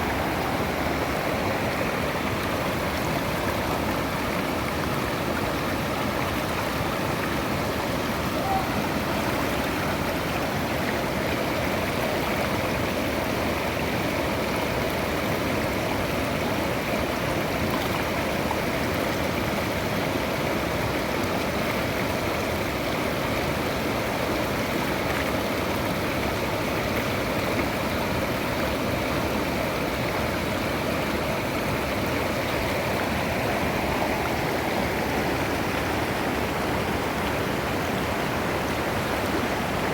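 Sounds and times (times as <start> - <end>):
waterfall and stream rushing: 0.0 - 39.9.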